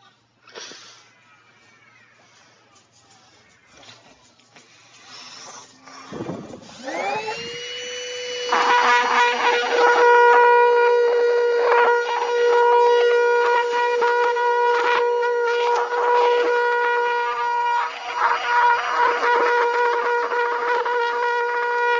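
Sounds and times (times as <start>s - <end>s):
carpet cleaner motor whining: 5.0s - 21.9s.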